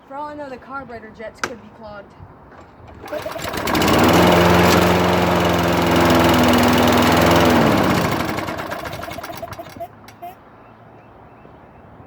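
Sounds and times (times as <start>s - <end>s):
lawn mower engine running: 2.6s - 10.4s.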